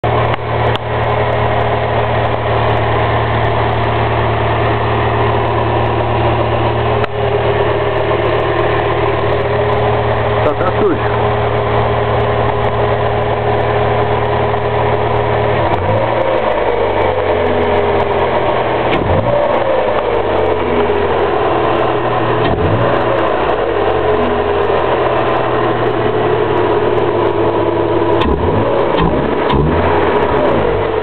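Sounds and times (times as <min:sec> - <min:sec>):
car engine idling and revving: 0:00.0 - 0:31.0.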